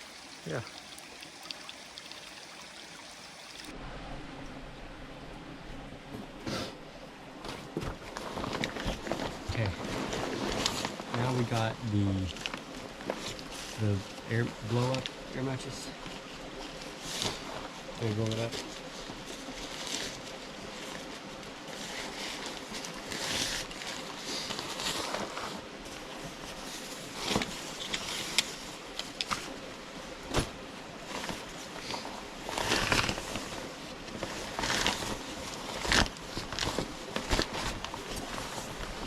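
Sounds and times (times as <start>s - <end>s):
camping gear rustling: 6.2s - 14.2s, 16.0s - 39.0s.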